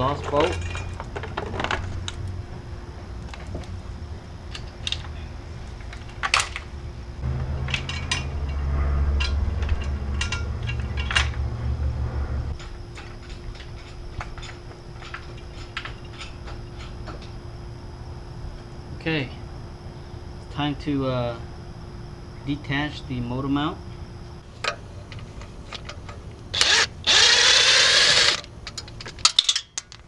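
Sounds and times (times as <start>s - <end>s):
low hum: 0.0s - 29.4s
wrench clinking on bolts: 9.2s - 11.4s, 25.1s - 30.0s.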